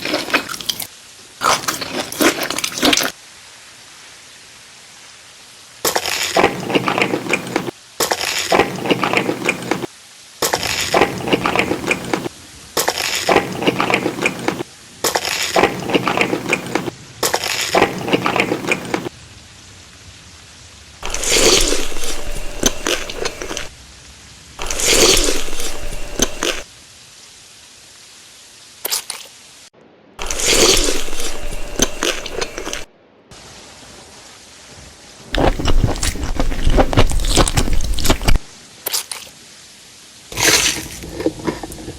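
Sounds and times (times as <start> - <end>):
crunchy food chewing: 0.0 - 3.2, 5.8 - 19.1, 21.0 - 23.7, 24.6 - 26.7, 30.2 - 32.9, 35.3 - 39.3, 40.3 - 41.9.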